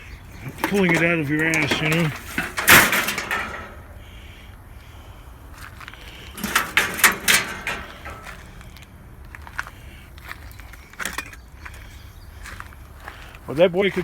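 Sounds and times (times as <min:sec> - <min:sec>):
metal parts knocking and scraping: 0:00.3 - 0:04.1, 0:06.3 - 0:08.6.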